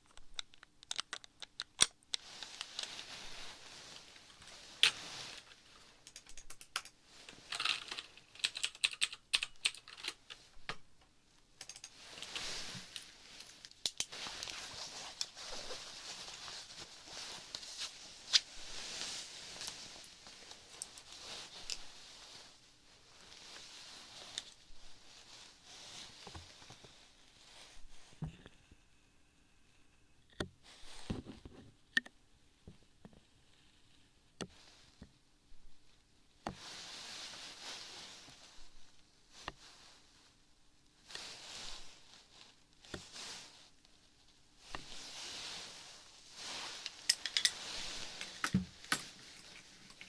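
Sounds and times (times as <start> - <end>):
objects clicking and tapping: 0.0 - 2.8, 6.0 - 14.1, 46.9 - 50.0
crisp rustling: 2.1 - 6.3, 11.8 - 28.1, 36.6 - 40.2, 40.9 - 50.0.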